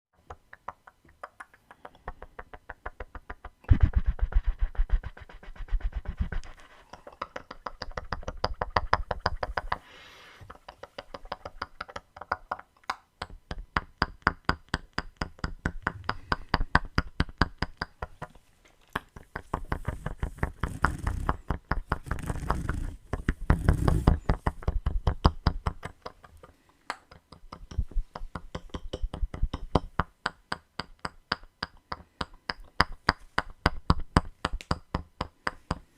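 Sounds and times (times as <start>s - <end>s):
wet mouth clicks and pops: 0.2s - 4.4s.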